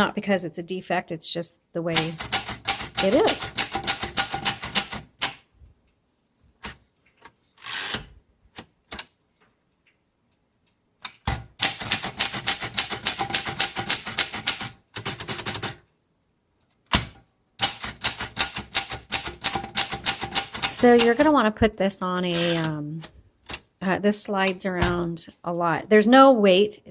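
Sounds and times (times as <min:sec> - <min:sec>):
typewriter rasp: 0:02.0 - 0:05.4, 0:11.3 - 0:15.8, 0:17.6 - 0:21.3, 0:22.3 - 0:22.8
typewriter typing: 0:02.0 - 0:05.4, 0:11.2 - 0:15.8, 0:17.6 - 0:21.3, 0:22.3 - 0:22.8.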